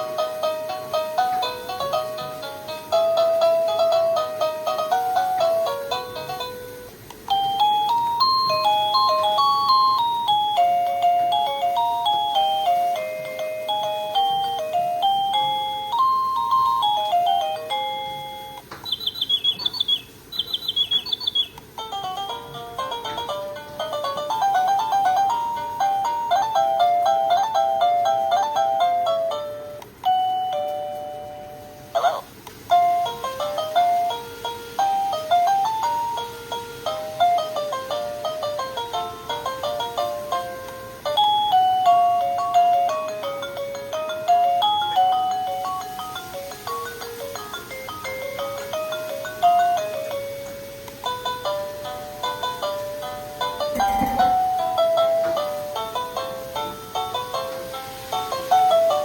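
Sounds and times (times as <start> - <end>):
electronic doorbell chime: 7.3 - 31.9, 32.8 - 50.7, 53.8 - 55.5.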